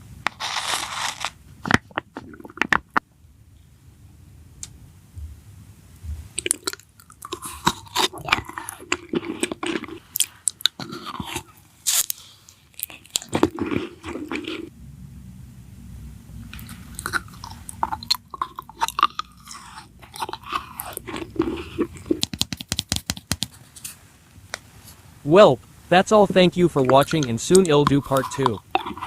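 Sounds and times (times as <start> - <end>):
person biting and chewing food: 0.2 - 3.0, 6.3 - 14.7, 16.5 - 24.0, 26.6 - 29.0.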